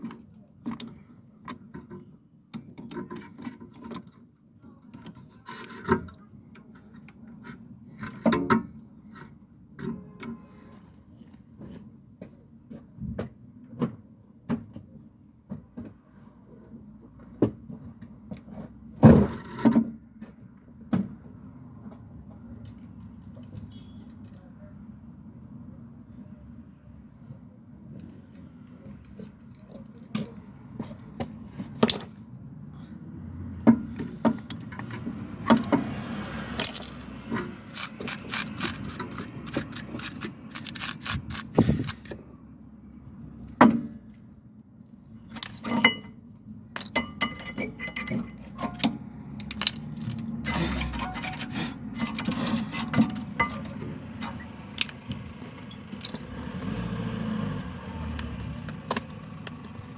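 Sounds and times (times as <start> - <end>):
hand tools and metal parts clinking: 0.0 - 11.0, 33.5 - 42.4, 44.8 - 56.8, 57.5 - 59.9.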